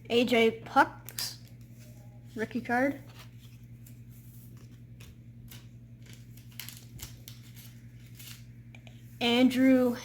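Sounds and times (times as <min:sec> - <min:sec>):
faint steady hum: 0:00.0 - 0:10.0
trading cards flicking and rustling: 0:01.0 - 0:09.0.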